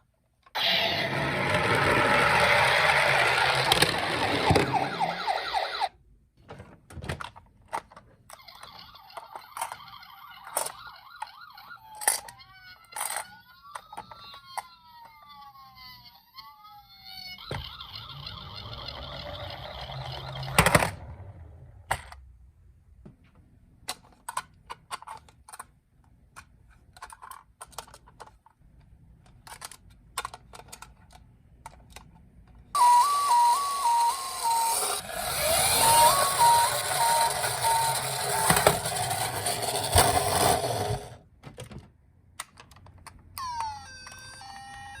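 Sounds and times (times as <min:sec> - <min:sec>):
electronic hi-lo siren: 0:00.6 - 0:05.9, 0:32.8 - 0:38.9
toy rolling rumble: 0:00.6 - 0:05.9, 0:17.0 - 0:22.1, 0:33.6 - 0:41.2
toy siren wail: 0:00.6 - 0:06.0, 0:08.3 - 0:20.7, 0:32.8 - 0:41.1, 0:43.4 - 0:45.0.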